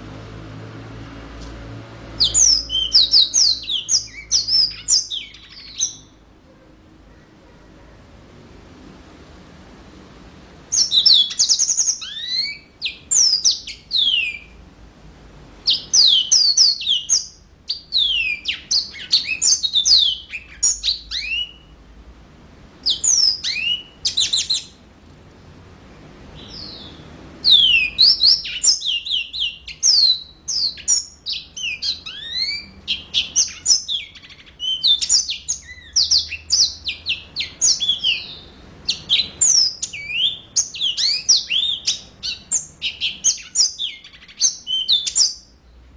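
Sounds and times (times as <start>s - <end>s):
canary singing: 0.0s - 8.2s, 10.6s - 14.7s, 15.4s - 21.9s, 22.7s - 25.3s, 26.2s - 45.8s.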